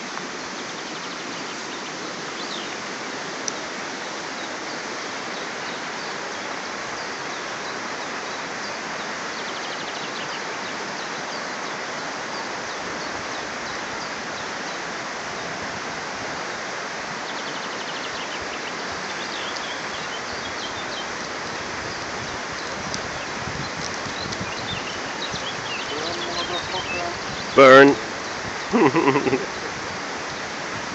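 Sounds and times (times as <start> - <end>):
small birds chirping: 0.0 - 15.6, 16.6 - 30.9
stream rushing: 0.0 - 30.9.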